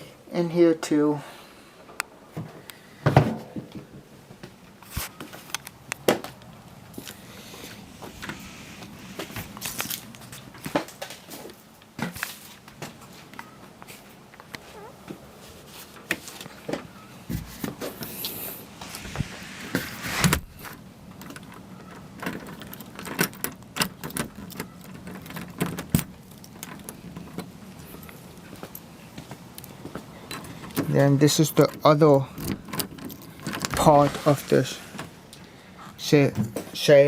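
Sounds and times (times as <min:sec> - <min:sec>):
rustling: 0:04.8 - 0:23.5, 0:32.6 - 0:35.7
knocks and clicks of handling: 0:20.6 - 0:30.9.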